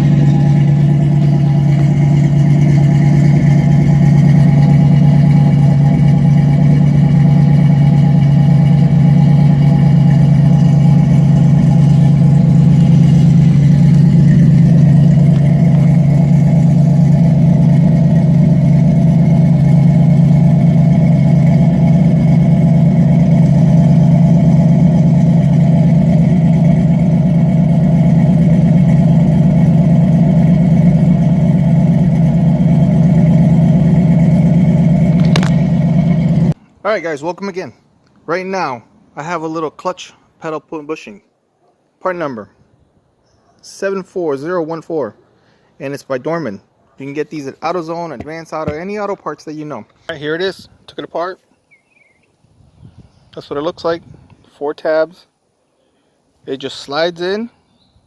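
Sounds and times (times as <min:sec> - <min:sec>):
car engine idling loudly: 0:00.0 - 0:36.6.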